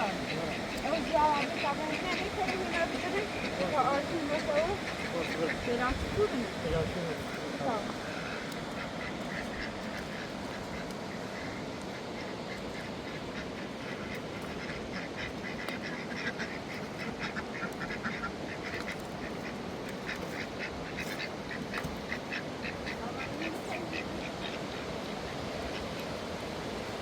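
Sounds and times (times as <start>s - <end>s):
ducks quacking: 0.0s - 27.0s
river water rushing: 0.0s - 27.0s.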